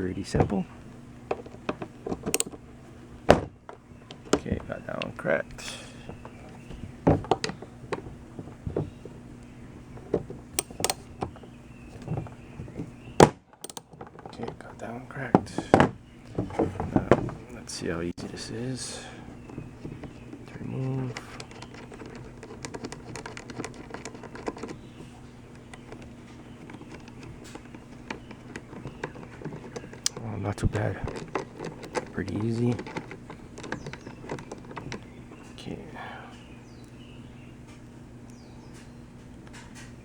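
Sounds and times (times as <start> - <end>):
steady low hum: 0.0 - 40.0
socket wrench clicking: 1.3 - 2.6, 10.6 - 11.4, 13.6 - 13.9
socket wrench clicking on bolts: 2.2 - 2.6, 10.6 - 11.1, 13.6 - 13.8.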